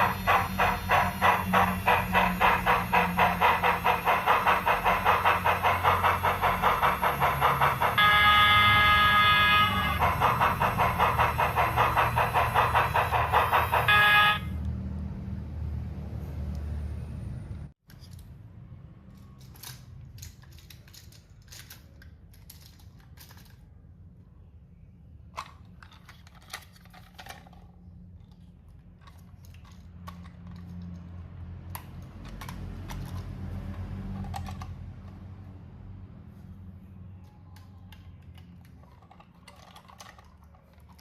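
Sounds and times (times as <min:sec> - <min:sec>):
model train wheels clicking: 0:00.0 - 0:14.5
motor hum: 0:00.0 - 0:14.8.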